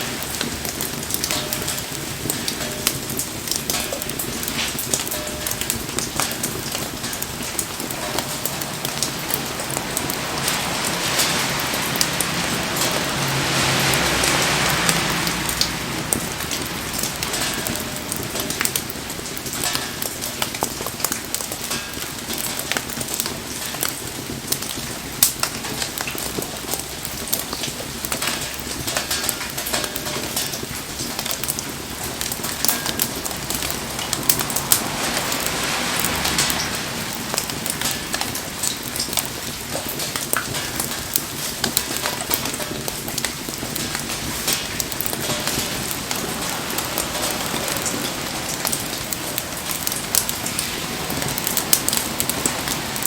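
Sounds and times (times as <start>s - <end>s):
fire crackling and popping: 0.0s - 53.0s
rain patter: 0.0s - 53.0s
rush of noise: 32.6s - 38.8s, 45.4s - 53.0s.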